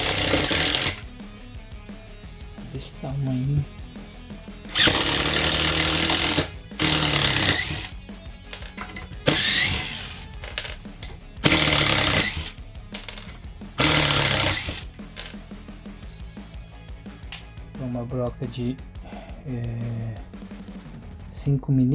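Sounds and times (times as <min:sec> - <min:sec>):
impact driver hammering: 0:00.0 - 0:01.1, 0:04.7 - 0:08.0, 0:08.6 - 0:15.4.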